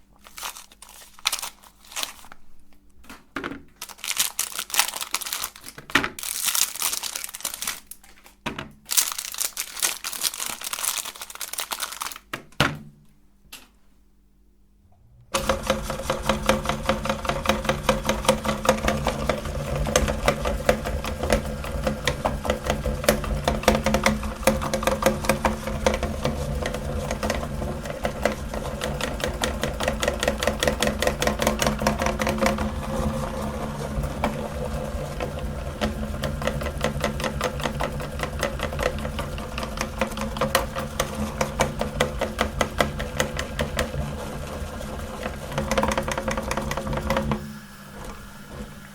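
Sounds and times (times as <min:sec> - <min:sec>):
soap crackling in grinder: 0:00.0 - 0:02.4, 0:03.6 - 0:12.6, 0:15.3 - 0:48.9
meat grinder motor hum: 0:15.3 - 0:48.9.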